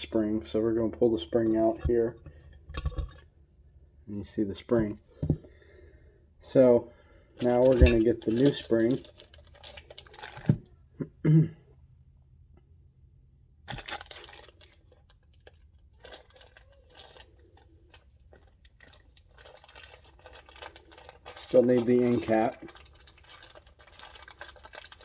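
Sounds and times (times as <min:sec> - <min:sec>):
plastic bags crinkling and tearing: 0:07.4 - 0:10.7, 0:13.7 - 0:25.0.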